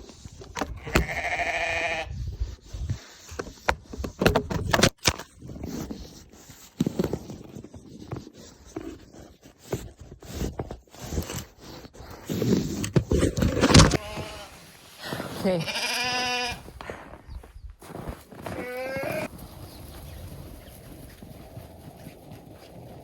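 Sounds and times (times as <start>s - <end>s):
sheep bleating: 0.8s - 2.1s, 14.0s - 14.6s, 15.6s - 16.7s, 18.5s - 19.3s
scraping and crunching in snow: 13.2s - 23.0s
footsteps in snow: 13.9s - 23.0s.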